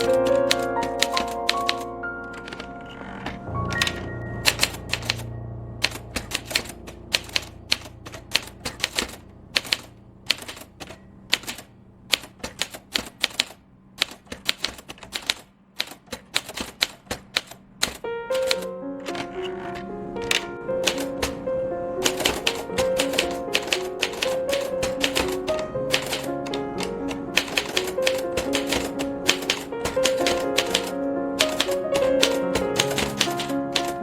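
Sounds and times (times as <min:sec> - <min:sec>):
typewriter keys clacking: 0:00.0 - 0:05.2, 0:05.8 - 0:21.4, 0:22.0 - 0:34.0.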